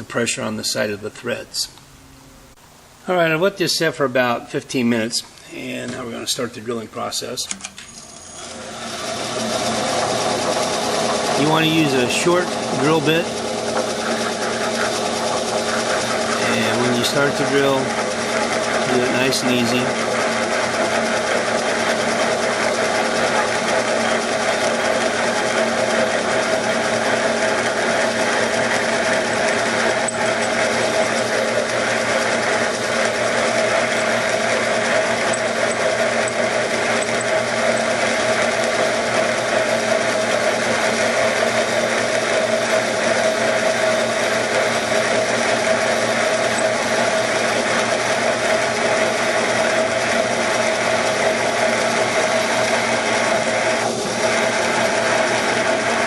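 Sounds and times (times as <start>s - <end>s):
drill boring through metal: 7.9s - 56.0s.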